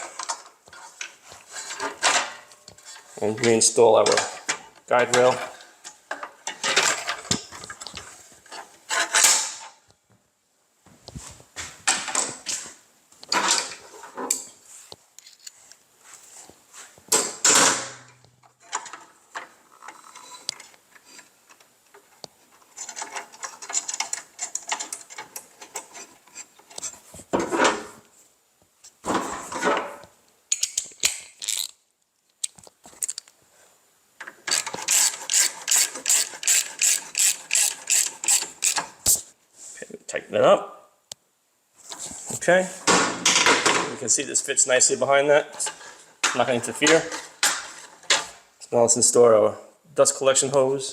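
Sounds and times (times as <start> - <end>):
knocks and scraping: 0.0 - 9.8, 10.9 - 28.2, 28.8 - 31.6, 41.8 - 48.5
hand ratchet clicking: 34.5 - 38.9.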